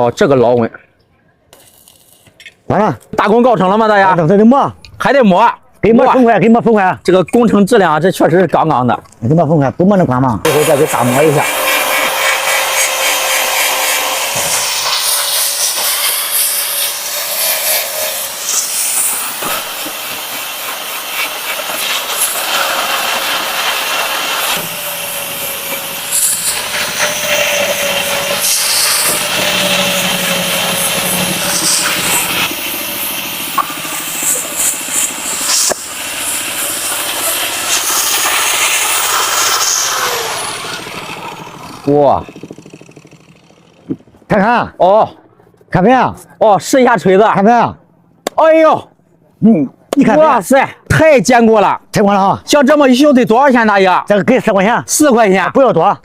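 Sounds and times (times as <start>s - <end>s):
metal grinding hiss: 1.6s - 2.5s, 10.5s - 43.8s
grinder motor whine: 10.4s - 44.3s.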